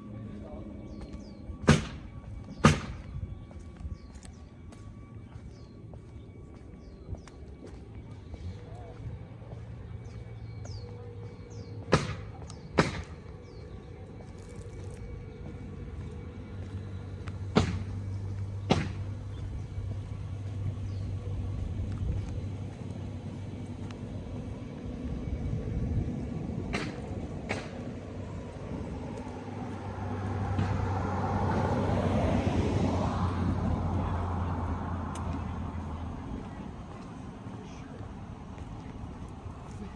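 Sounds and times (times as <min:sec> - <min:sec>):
low outdoor rumble: 0:00.0 - 0:39.9
sharp bangs: 0:01.5 - 0:03.2, 0:11.8 - 0:13.3, 0:17.5 - 0:19.7, 0:26.7 - 0:28.1, 0:30.3 - 0:31.3
car driving past: 0:15.2 - 0:39.9.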